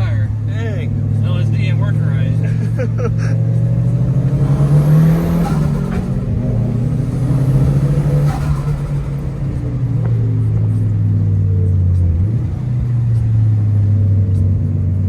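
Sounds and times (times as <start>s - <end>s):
car engine running under load: 0.0s - 15.0s.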